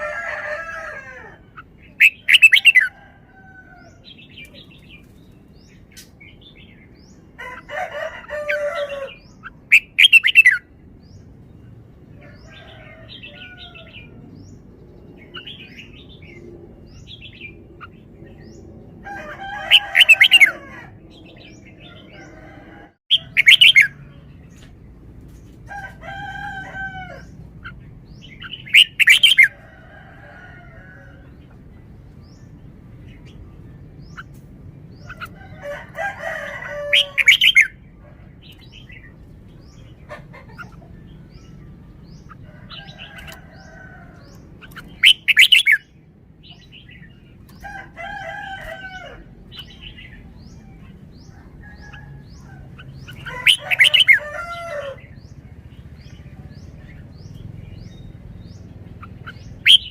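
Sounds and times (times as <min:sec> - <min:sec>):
soft bird calls: 0:12.2 - 0:45.9.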